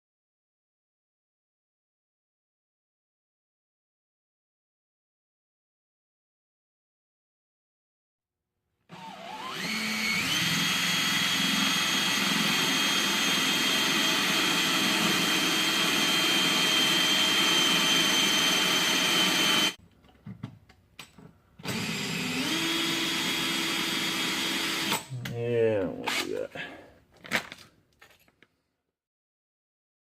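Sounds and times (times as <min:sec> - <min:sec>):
electric drill motor whining: 0:08.9 - 0:19.8, 0:21.6 - 0:25.1.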